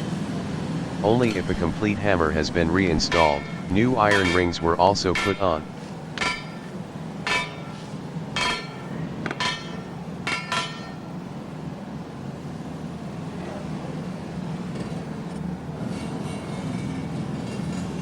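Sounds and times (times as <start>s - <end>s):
low hum: 0.7s - 11.4s
hammer striking iron: 3.1s - 11.2s.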